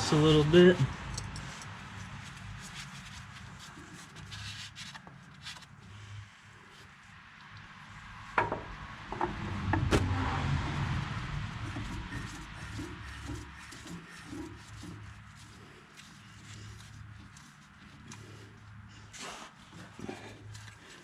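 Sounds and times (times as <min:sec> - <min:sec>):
rustling: 0:01.4 - 0:05.8
sharp knock: 0:09.7 - 0:10.2
rag rubbing a metal surface: 0:11.4 - 0:18.4.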